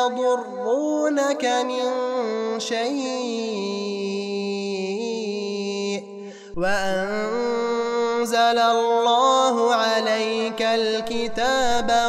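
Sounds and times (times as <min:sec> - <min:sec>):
man chanting melodic recitation: 0:00.0 - 0:12.0.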